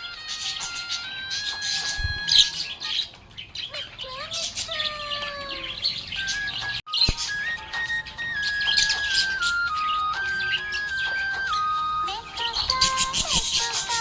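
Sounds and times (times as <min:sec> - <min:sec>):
budgerigars chirping: 0:00.0 - 0:14.0
backing melody: 0:05.6 - 0:12.8.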